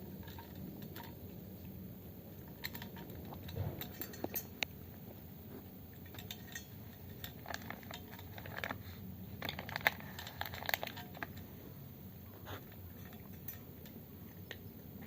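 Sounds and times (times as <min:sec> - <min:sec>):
cat crunching food: 0:00.1 - 0:11.8.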